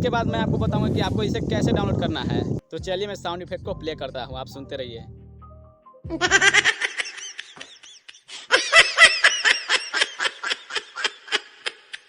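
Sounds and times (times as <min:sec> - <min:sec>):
person laughing: 0:06.1 - 0:12.0.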